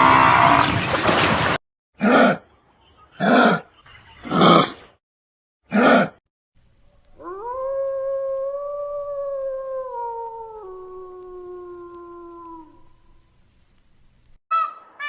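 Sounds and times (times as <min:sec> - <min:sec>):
dog howling: 0:07.2 - 0:13.0.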